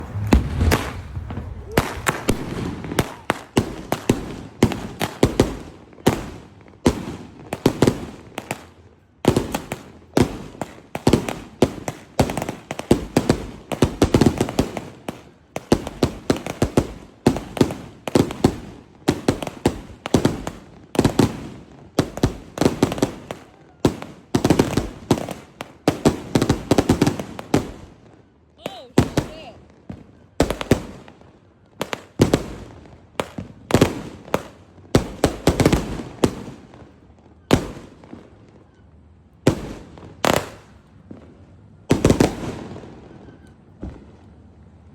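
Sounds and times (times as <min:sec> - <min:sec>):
firecracker strings banging: 0:00.0 - 0:03.5.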